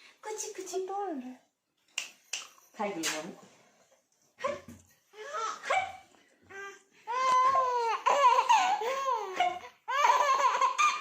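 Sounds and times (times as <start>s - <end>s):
baby squealing and wailing: 6.6s - 11.0s.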